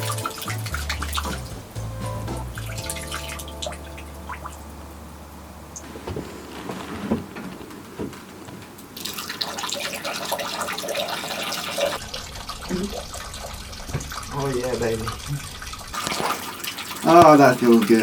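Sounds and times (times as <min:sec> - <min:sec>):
coolant pouring and splashing: 0:00.0 - 0:01.8, 0:02.5 - 0:04.6, 0:08.9 - 0:18.0.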